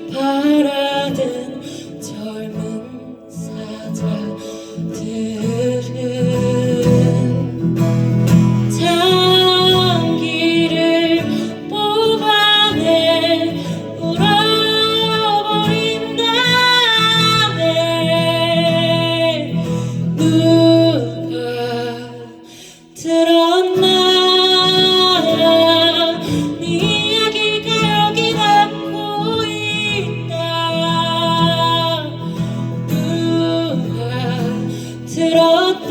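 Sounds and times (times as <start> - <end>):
guitar: 0.0 - 35.9
person singing long notes: 8.7 - 35.9.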